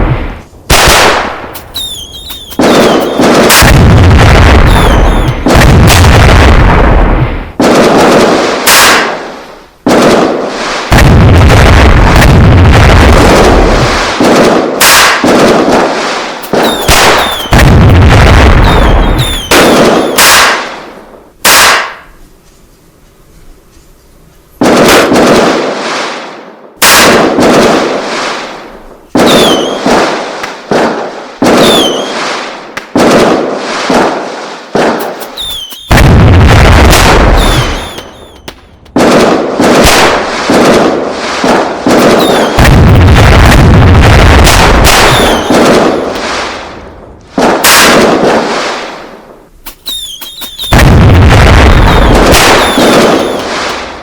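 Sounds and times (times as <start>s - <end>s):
loud bangs with rumbling tail: 0.0s - 9.2s, 9.9s - 15.9s, 16.5s - 20.8s, 34.8s - 48.4s, 50.0s - 54.0s
falling whistles: 1.6s - 3.6s, 4.6s - 5.4s, 16.5s - 17.6s, 18.6s - 20.4s, 29.3s - 29.8s, 31.6s - 32.3s, 35.0s - 36.0s, 37.3s - 38.6s, 42.2s - 42.6s, 45.0s - 46.2s, 49.7s - 50.8s, 51.8s - 53.5s.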